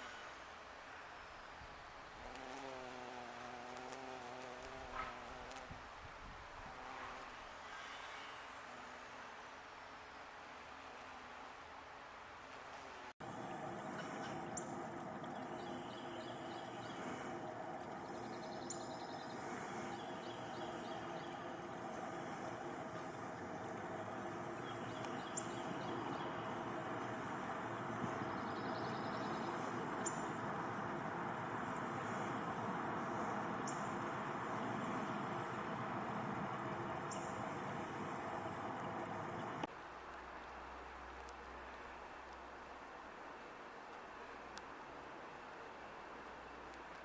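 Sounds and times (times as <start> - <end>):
insects buzzing high: 2.2 - 5.7, 13.2 - 39.7
faint rapid trills: 13.2 - 39.7.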